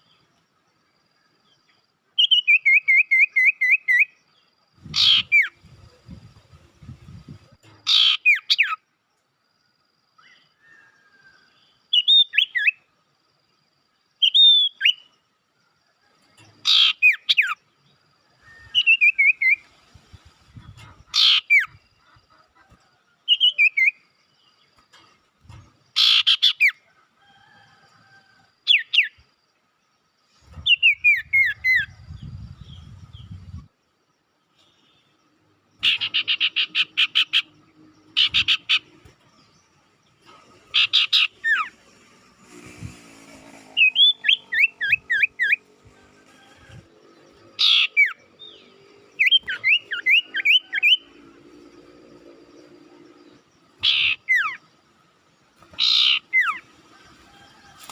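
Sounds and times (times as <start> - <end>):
small songbirds calling: 1.5 - 8.9, 14.1 - 15.3, 15.9 - 26.9, 30.2 - 57.9
harsh rattling bird notes: 55.6 - 57.9.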